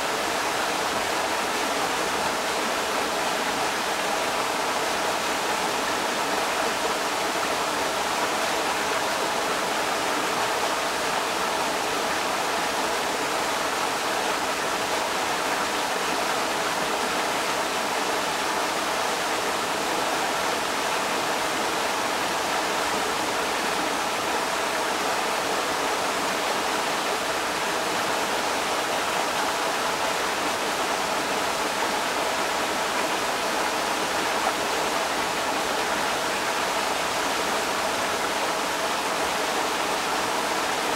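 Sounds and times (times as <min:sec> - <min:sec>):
creek water rushing over rocks: 0:00.0 - 0:40.9.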